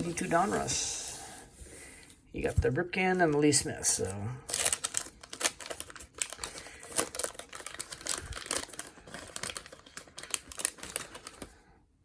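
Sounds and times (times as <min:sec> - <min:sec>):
wrapper crinkling: 0:03.5 - 0:11.6.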